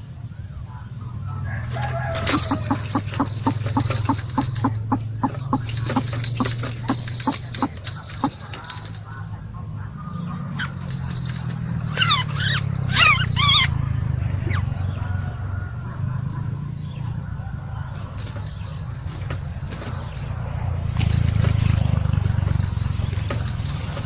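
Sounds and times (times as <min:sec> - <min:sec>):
bird chirps: 0:02.3 - 0:08.6.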